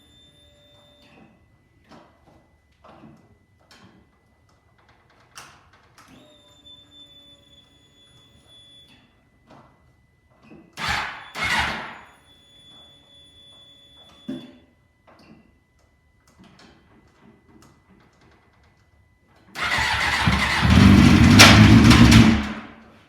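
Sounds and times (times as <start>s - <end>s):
fuel pump whining: 10.8s - 12.0s, 19.6s - 22.9s
loud bursts of noise: 19.6s - 22.8s.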